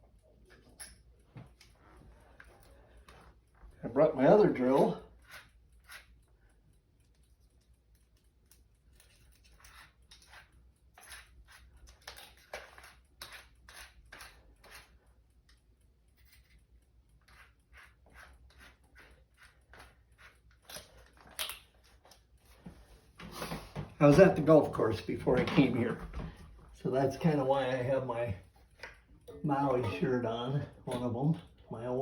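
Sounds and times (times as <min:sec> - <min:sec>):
tools clicking and rustling: 0:00.1 - 0:03.8, 0:07.0 - 0:22.6.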